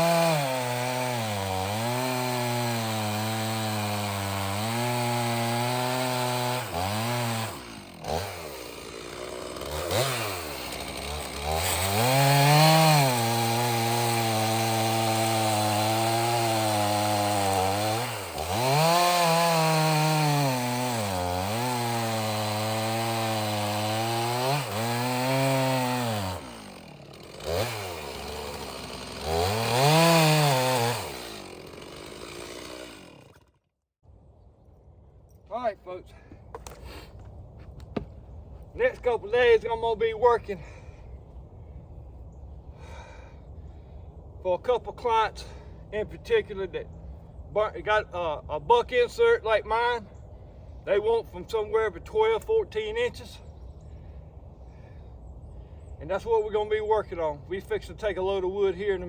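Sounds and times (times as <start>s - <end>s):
chainsaw cutting wood: 0.0s - 33.7s, 36.5s - 38.2s.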